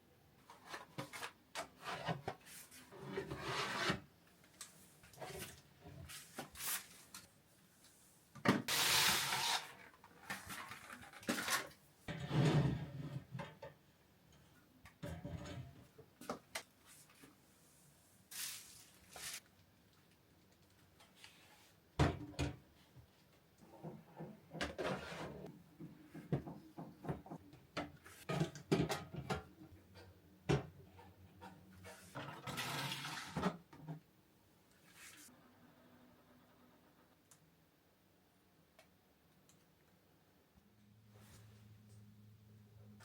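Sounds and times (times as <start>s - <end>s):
objects rubbing and scraping: 0.6s - 4.1s, 24.6s - 25.5s.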